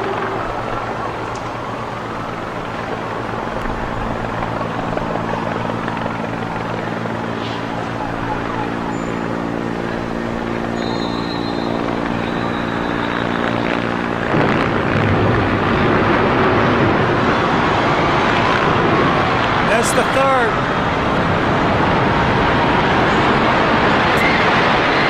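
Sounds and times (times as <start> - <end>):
engine drone: 0.0 - 25.0
outdoor noise: 0.0 - 25.0.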